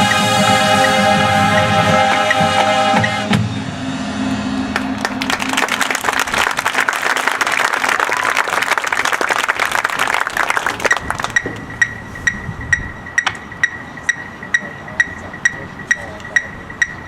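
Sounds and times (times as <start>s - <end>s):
marching band low note: 0.0s - 5.6s
audience applauding: 4.7s - 11.4s.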